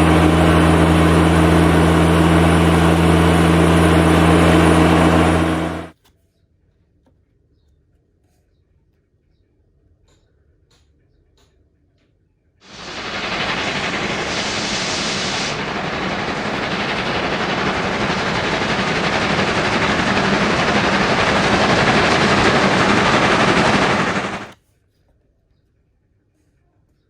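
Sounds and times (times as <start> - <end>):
engine rushing roar: 0.0 - 5.9, 12.7 - 24.6
brief hiss: 12.7 - 24.6.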